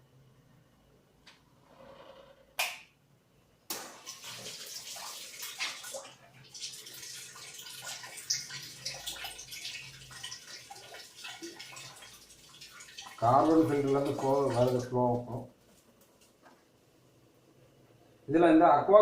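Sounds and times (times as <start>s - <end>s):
water running and splashing: 3.8s - 15.1s.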